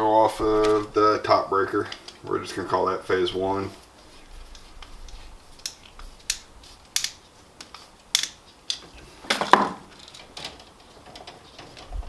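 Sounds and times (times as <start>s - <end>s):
metallic scraping rattle: 3.1s - 12.0s
sharp metallic clicks: 4.5s - 8.9s.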